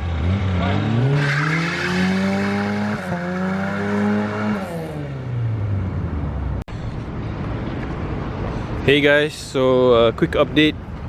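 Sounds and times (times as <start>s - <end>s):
car engine accelerating: 0.0s - 6.5s.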